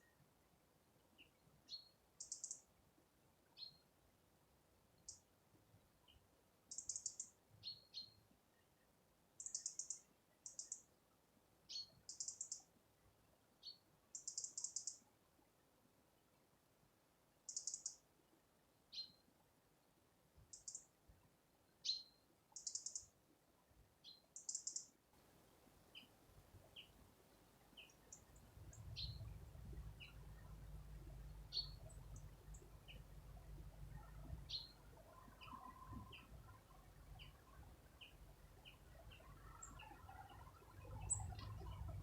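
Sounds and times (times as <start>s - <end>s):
songbirds calling: 1.2s - 2.7s, 6.0s - 8.2s, 9.4s - 10.9s, 13.6s - 15.0s, 17.5s - 18.0s, 20.5s - 20.9s, 21.8s - 23.1s, 24.0s - 25.0s, 25.8s - 42.0s
low steady rumble: 28.3s - 42.0s.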